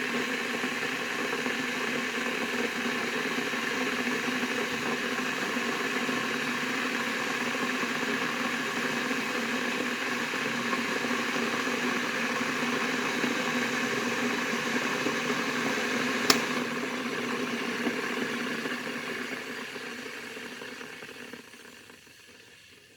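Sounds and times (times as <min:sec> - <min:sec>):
kettle boiling: 0:03.0 - 0:22.9
kettle switch click: 0:16.2 - 0:16.6.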